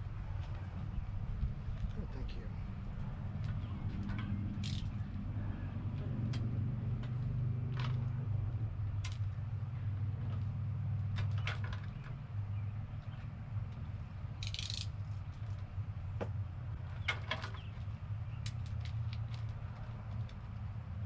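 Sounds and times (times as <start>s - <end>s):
steady low hum: 0.0s - 21.0s
small parts clicking and rattling: 3.5s - 5.2s, 8.9s - 9.4s, 13.7s - 15.7s, 17.0s - 20.7s.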